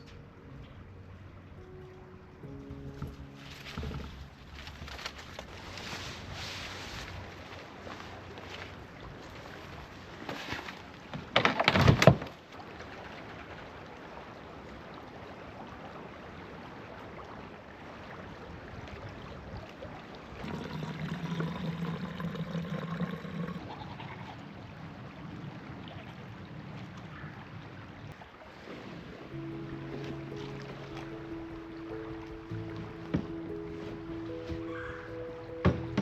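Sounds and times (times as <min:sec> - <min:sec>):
low steady hum: 0:00.0 - 0:10.7, 0:29.1 - 0:36.0
river water flowing: 0:00.0 - 0:36.0.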